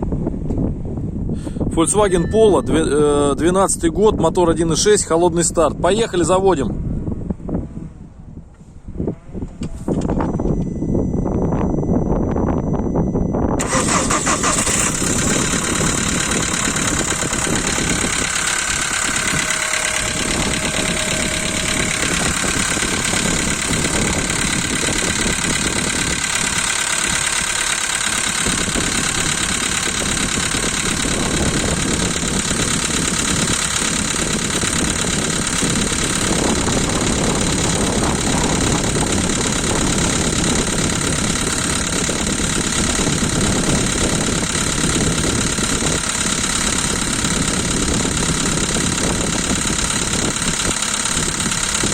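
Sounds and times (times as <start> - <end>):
car engine idling: 13.6 - 51.9
engine knocking: 13.6 - 51.9.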